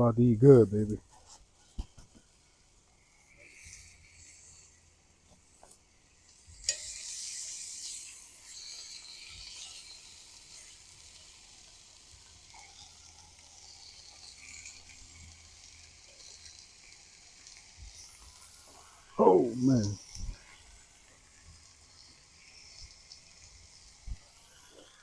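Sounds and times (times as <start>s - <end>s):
steak sizzling: 0.2s - 25.0s
steak hitting skillet: 6.6s - 10.6s.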